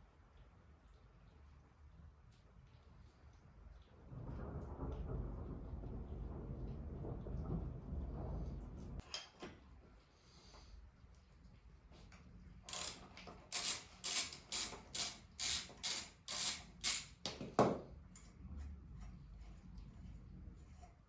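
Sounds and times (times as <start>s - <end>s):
ratchet wrench clicking: 12.7s - 17.4s.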